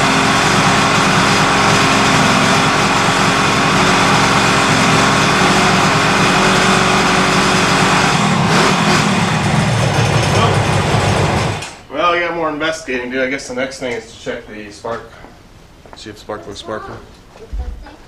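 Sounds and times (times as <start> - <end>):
motorcycle engine running: 0.0 - 11.6.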